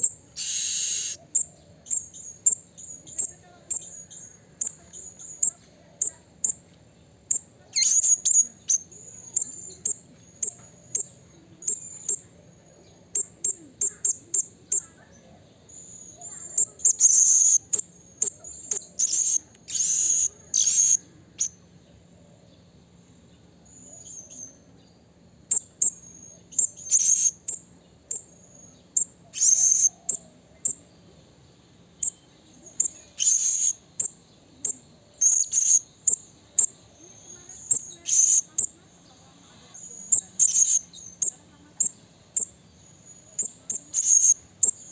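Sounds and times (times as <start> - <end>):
parrot chirping and screeching: 0.4 - 1.2.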